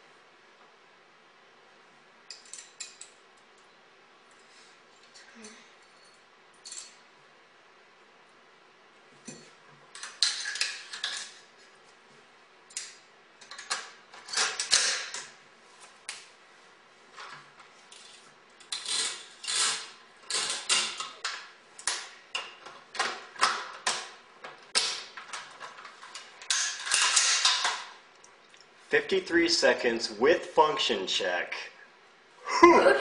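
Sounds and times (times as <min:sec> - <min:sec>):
metal parts clicking and rattling: 0:02.3 - 0:03.2, 0:09.2 - 0:11.4, 0:12.7 - 0:15.3, 0:17.2 - 0:28.0.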